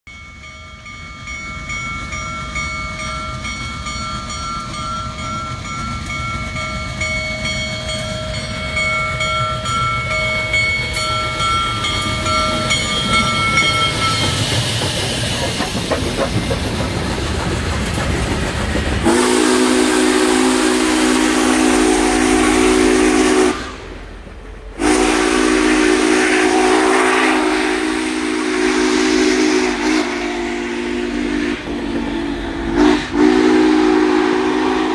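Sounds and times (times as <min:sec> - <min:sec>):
high steady tone: 0:00.1 - 0:14.8
train rumble: 0:00.1 - 0:34.9
steam hissing: 0:04.7 - 0:34.9
deep steam whistle blasts: 0:19.0 - 0:24.1, 0:24.8 - 0:34.9.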